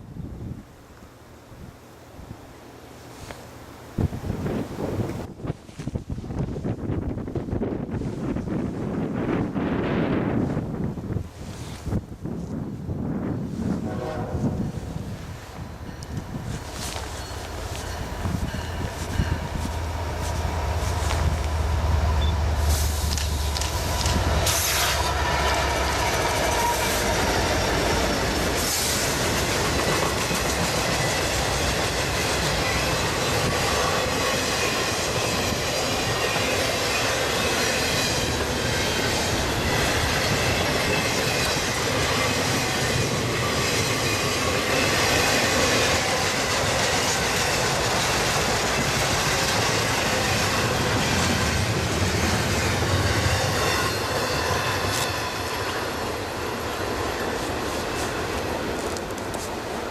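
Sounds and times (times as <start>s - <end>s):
locomotive drone: 13.0s - 59.9s
train wheels clattering over rails: 16.0s - 59.7s
train wheels squealing: 30.0s - 55.9s.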